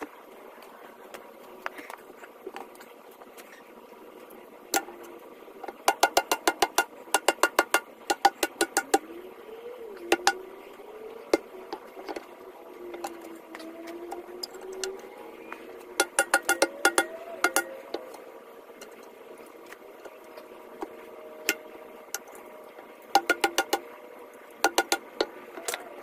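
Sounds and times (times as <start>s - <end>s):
hammer ringing on metal: 16.0s - 17.9s.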